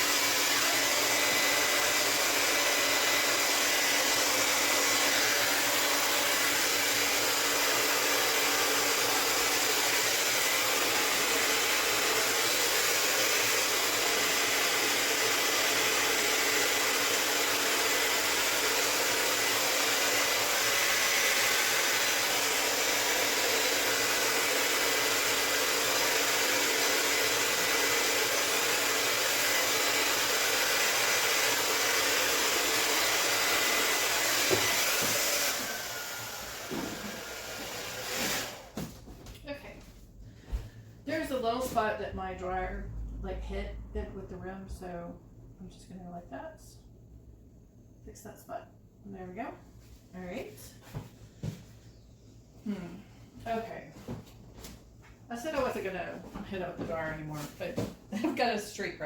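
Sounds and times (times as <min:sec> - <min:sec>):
hair dryer blowing: 0:00.0 - 0:38.9.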